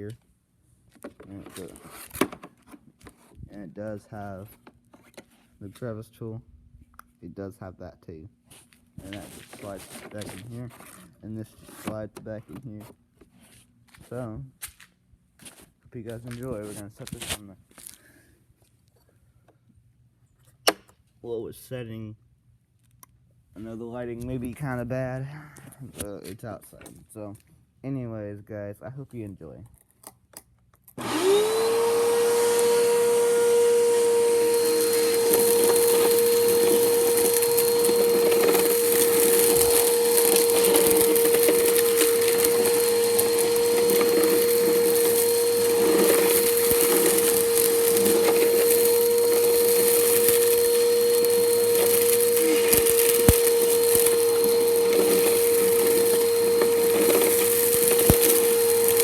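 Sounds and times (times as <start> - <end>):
debris crackling in vacuum: 31.0 - 59.0
vacuum cleaner motor whine: 31.0 - 59.0.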